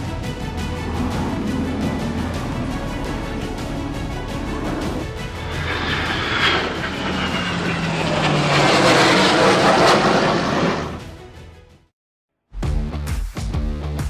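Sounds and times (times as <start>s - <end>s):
airplane flying past: 0.0s - 11.2s.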